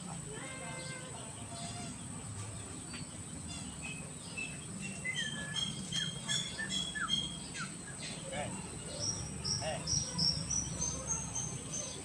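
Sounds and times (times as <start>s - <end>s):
bird chirps and whistles: 3.9s - 8.0s.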